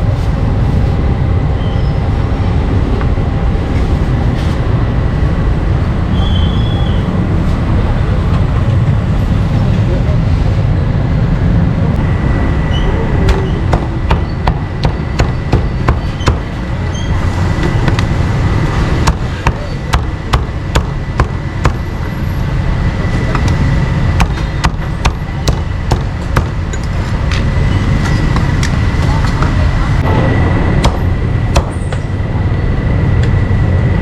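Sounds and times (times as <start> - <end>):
low rumble: 7.0 - 34.0
cleaver chopping meat: 19.0 - 21.8, 24.2 - 26.6.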